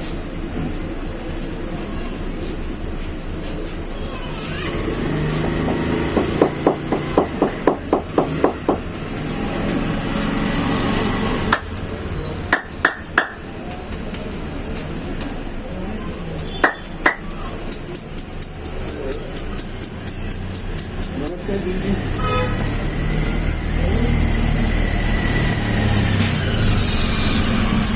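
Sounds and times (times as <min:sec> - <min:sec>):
pulsing high-pitched whine: 0:15.3 - 0:27.9.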